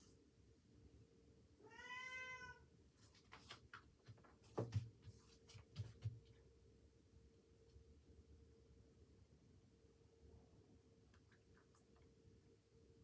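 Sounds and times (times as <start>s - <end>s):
cat meowing: 1.6s - 2.6s.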